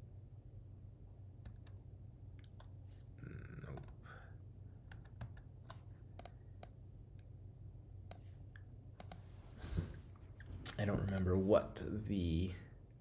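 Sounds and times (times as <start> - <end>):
low electrical hum: 0.0 - 13.0
mouse clicks: 4.9 - 6.8, 8.1 - 8.3, 9.0 - 9.2, 11.0 - 11.3.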